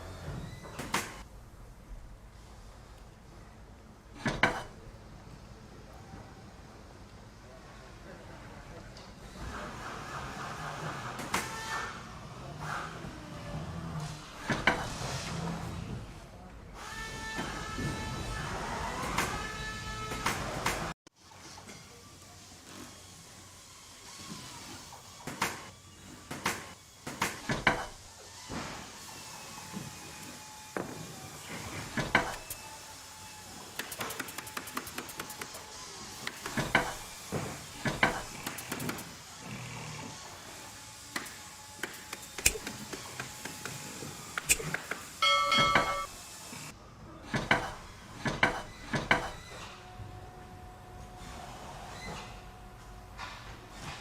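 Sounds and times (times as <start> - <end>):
tools knocking: 44.4 - 46.1
brief metallic ring: 45.2 - 46.1.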